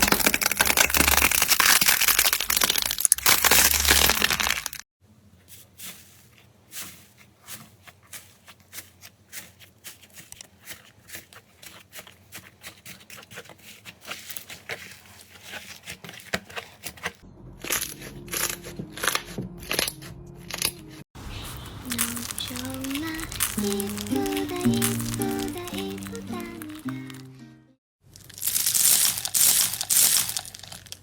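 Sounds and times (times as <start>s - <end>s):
slime crunching and crackling: 0.0s - 4.8s, 17.6s - 27.2s, 28.0s - 31.0s.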